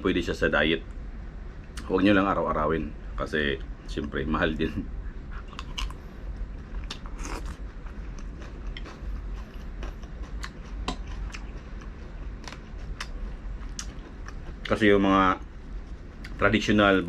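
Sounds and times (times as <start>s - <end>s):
low steady background: 0.0s - 17.0s
chewing and biting food: 5.3s - 16.4s
wet mouth clicks: 8.2s - 14.4s.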